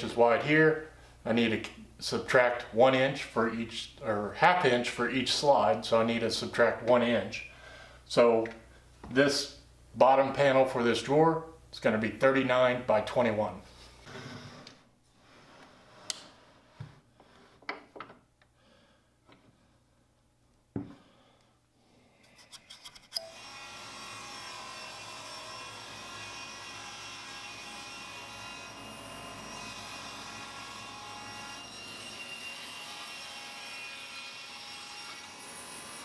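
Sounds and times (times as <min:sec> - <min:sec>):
table saw whine: 0:23.2 - 0:36.0.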